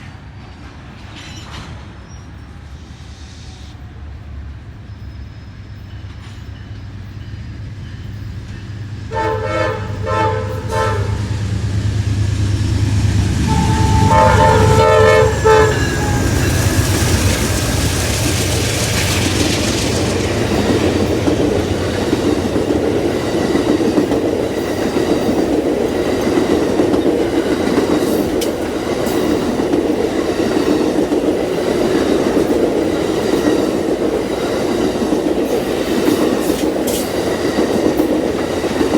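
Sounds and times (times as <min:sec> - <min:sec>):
wheels clacking on rail joints: 0:05.0 - 0:38.9
diesel locomotive rumble: 0:05.7 - 0:38.9
locomotive horn chord blasts: 0:09.1 - 0:11.5, 0:13.4 - 0:17.0.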